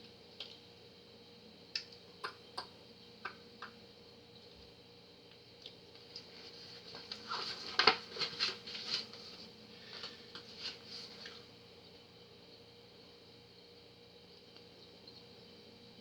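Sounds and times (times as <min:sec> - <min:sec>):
paper and card rustling: 0:06.3 - 0:11.4.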